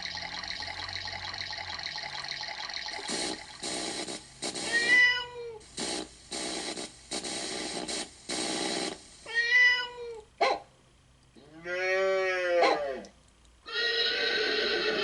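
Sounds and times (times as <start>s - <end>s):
keyboard sound-effect noise bursts: 0.0s - 5.0s
cat meow sample: 4.7s - 5.6s, 9.3s - 10.2s.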